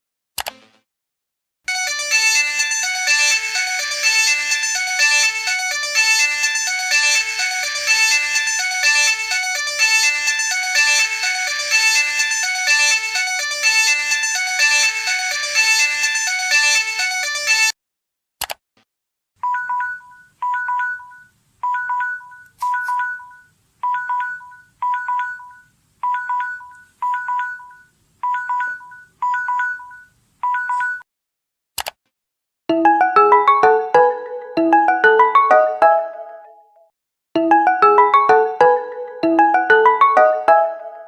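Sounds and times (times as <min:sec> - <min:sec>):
phone alarm melody: 0:01.7 - 0:17.8, 0:19.4 - 0:31.0, 0:37.4 - 0:41.0
phone alarm electronic beeps: 0:19.4 - 0:31.0.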